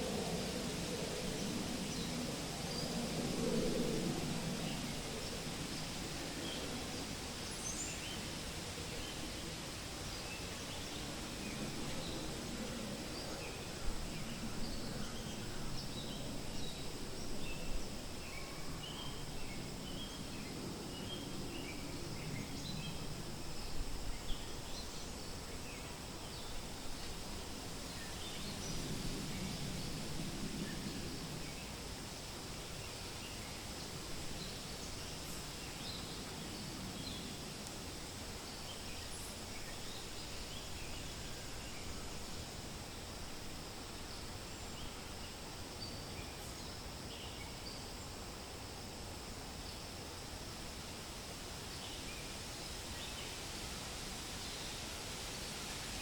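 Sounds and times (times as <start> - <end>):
wind rustling leaves: 0.0 - 56.0.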